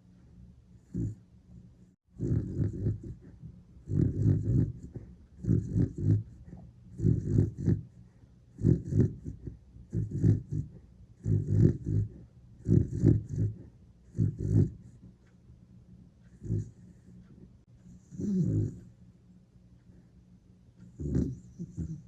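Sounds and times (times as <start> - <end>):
dog snoring: 0.8 - 1.2, 2.2 - 15.1, 16.2 - 18.9, 20.8 - 22.0.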